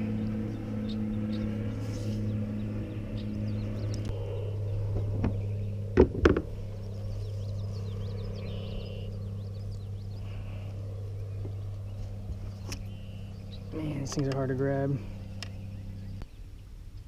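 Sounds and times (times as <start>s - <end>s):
low mechanical hum: 0.0s - 17.0s
sharp knocks: 6.0s - 6.5s
faint high bird chirps: 6.7s - 14.1s.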